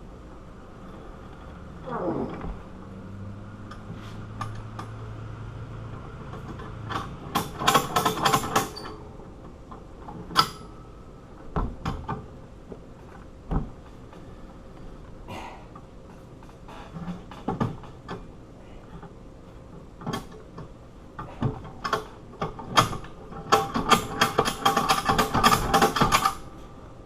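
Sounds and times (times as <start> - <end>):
metal clinks and knocks: 6.2 - 9.1.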